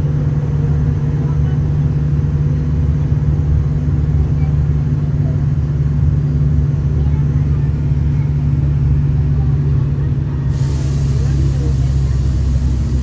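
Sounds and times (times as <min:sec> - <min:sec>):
diesel engine droning: 0:00.0 - 0:13.0.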